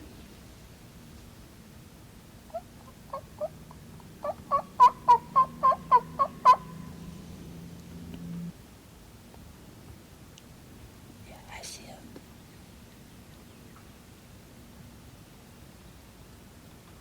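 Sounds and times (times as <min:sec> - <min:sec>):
turkey yelps: 0:02.5 - 0:07.0.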